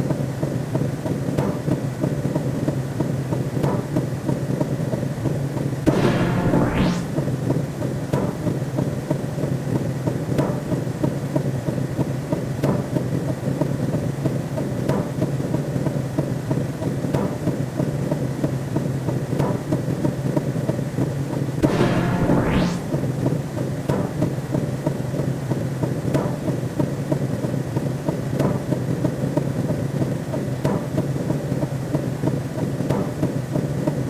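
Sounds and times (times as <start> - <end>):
rising whoosh: 5.9 - 7.6, 21.6 - 23.5.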